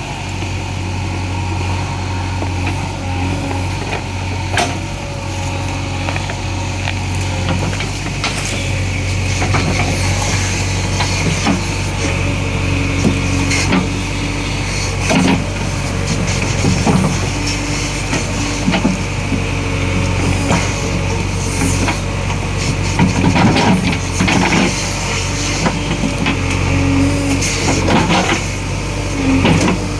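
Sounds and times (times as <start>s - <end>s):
diesel engine running: 0.0s - 29.9s
knocks and clanks: 3.5s - 5.0s, 15.0s - 15.6s, 23.0s - 24.8s.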